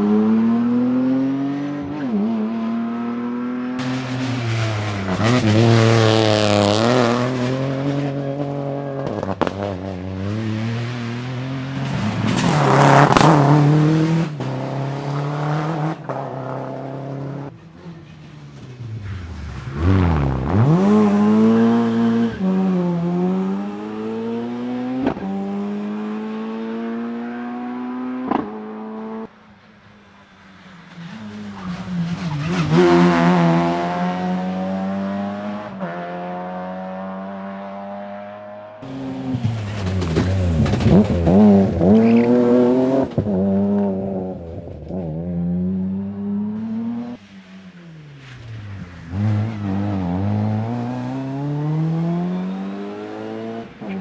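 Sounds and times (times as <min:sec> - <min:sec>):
rally car engines revving: 0:00.0 - 0:54.0
exhaust cracks: 0:11.8 - 0:17.5, 0:38.8 - 0:45.2.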